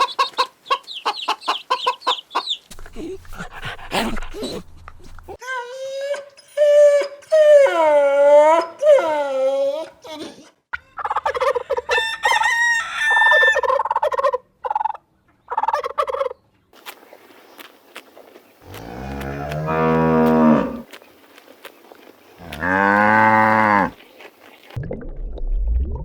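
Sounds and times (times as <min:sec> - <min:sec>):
cow mooing: 0:18.7 - 0:20.9, 0:22.4 - 0:24.0.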